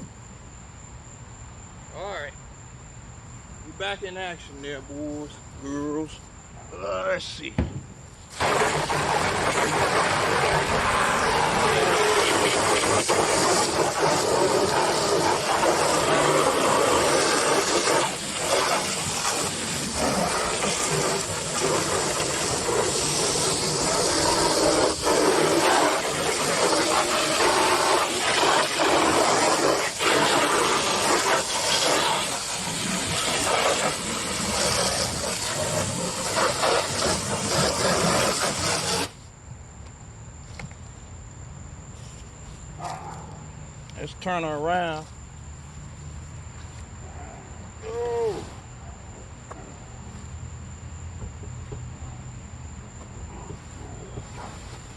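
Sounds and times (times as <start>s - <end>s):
faint insect trill: 0.0s - 9.0s, 9.6s - 54.9s
garden hose spraying water: 8.2s - 39.2s.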